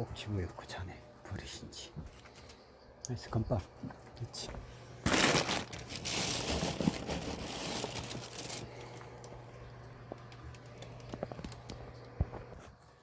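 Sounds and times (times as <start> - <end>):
plastic snack bag crinkling: 5.0 - 9.0.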